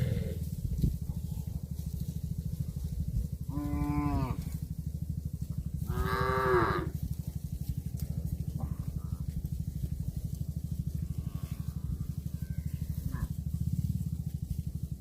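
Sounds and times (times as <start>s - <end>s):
cow mooing: 0.0s - 0.5s, 3.5s - 4.6s, 5.8s - 7.0s, 11.0s - 13.4s
low throbbing hum: 0.0s - 15.0s.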